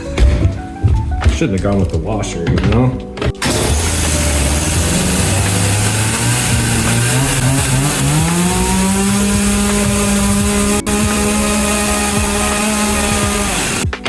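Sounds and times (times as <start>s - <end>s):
chainsaw engine revving: 3.4s - 13.8s.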